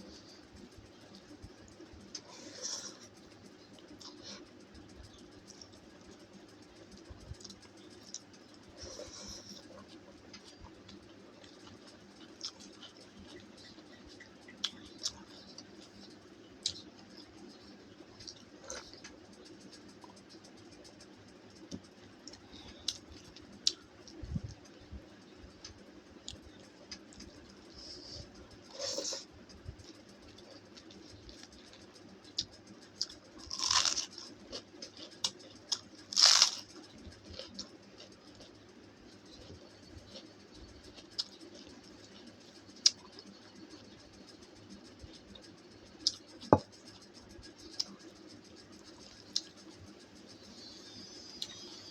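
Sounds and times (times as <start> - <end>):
quiet chewing and mouth noises: 0.0 - 51.9
steady low hum: 0.0 - 51.9
crunching bites: 32.4 - 38.6.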